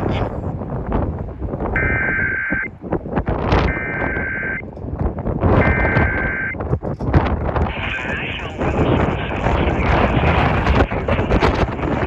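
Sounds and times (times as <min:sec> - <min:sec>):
loud rumbling noise: 0:00.0 - 0:12.0
warbling two-tone data signal: 0:01.8 - 0:02.7, 0:03.7 - 0:04.6, 0:05.6 - 0:06.6, 0:07.6 - 0:12.0.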